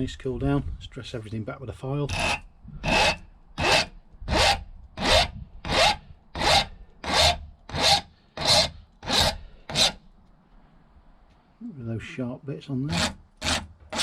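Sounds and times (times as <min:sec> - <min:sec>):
hand file rasping metal: 0:02.1 - 0:10.0, 0:12.9 - 0:14.0.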